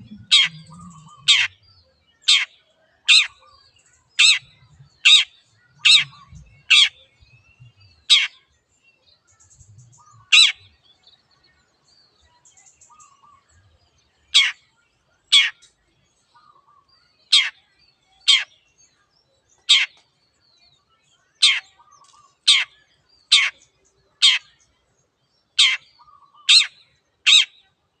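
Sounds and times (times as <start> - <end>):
bird harsh calls: 0.0 - 1.6, 2.3 - 7.1, 8.0 - 8.4, 10.0 - 10.7, 14.3 - 14.6, 15.3 - 15.6, 16.4 - 17.6, 18.2 - 18.6, 19.6 - 20.0, 21.4 - 24.6, 25.6 - 27.7
soft bird twittering: 0.0 - 27.7.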